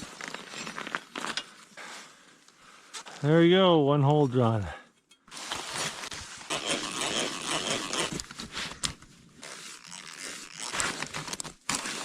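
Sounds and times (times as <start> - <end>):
drill bit grinding through steel: 6.5 - 8.2.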